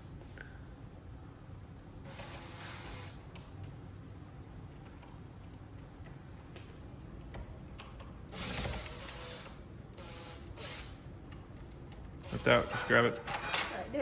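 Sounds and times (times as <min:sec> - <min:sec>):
power drill running: 0:08.3 - 0:10.9, 0:12.2 - 0:13.2.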